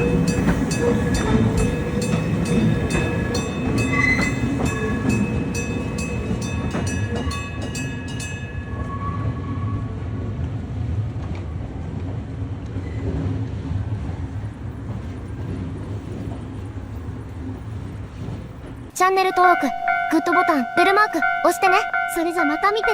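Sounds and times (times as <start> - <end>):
level crossing bell clanging: 0.0 - 9.0, 19.2 - 22.9
electric train rumbling over rails: 0.0 - 22.9.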